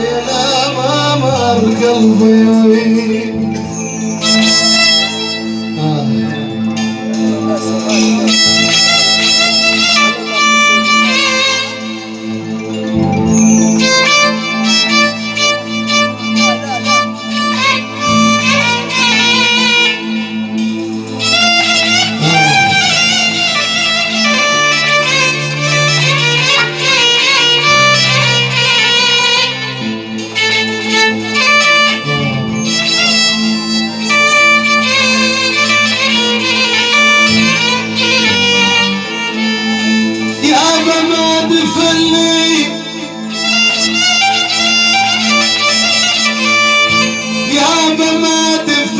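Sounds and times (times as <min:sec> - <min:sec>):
low held notes: 0:00.0 - 0:47.6
violin-like lead melody: 0:00.0 - 0:48.9.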